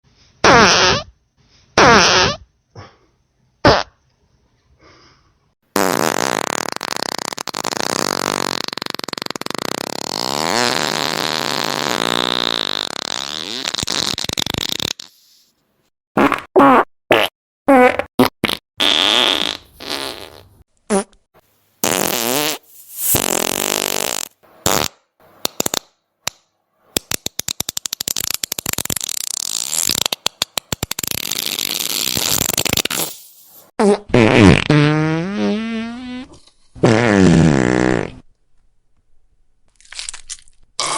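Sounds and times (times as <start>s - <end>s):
farting sounds: 0.4s - 1.1s, 1.8s - 2.5s, 3.6s - 4.0s, 5.7s - 15.4s, 16.2s - 21.2s, 21.8s - 26.0s, 27.1s - 38.3s.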